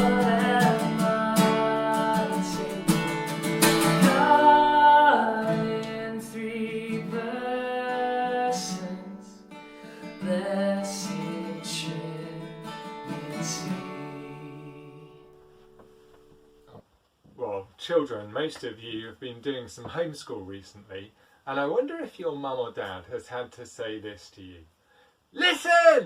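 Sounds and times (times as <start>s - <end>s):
person singing: 0.0s - 9.4s, 10.2s - 15.2s
strummed acoustic guitar: 0.0s - 16.3s.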